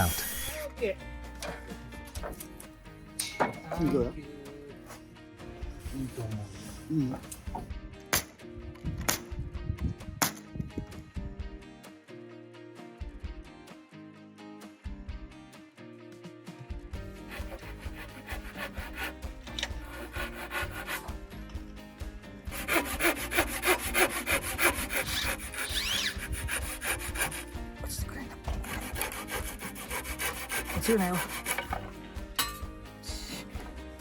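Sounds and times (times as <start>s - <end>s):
hand saw cutting wood: 0.0s - 0.7s, 17.1s - 21.4s, 22.5s - 32.0s.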